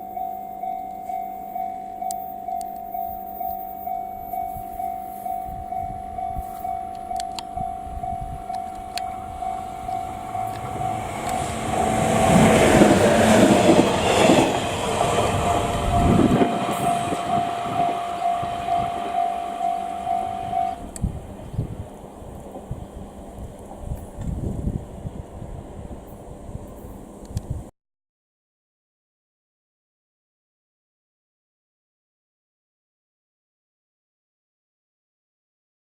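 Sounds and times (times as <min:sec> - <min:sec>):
level-crossing warning bell dinging: 0:00.0 - 0:21.3
electric train passing: 0:00.0 - 0:27.7.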